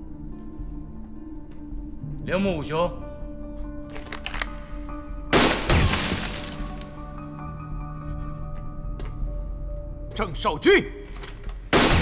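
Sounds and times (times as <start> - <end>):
dramatic background music: 0.0 - 12.0
loud gunshot: 5.4 - 6.4, 11.8 - 12.0.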